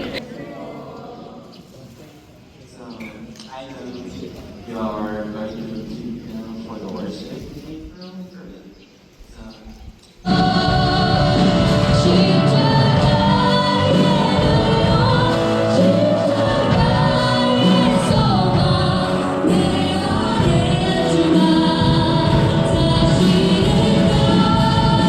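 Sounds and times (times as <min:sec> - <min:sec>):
song with singing voices: 0:10.2 - 0:25.0.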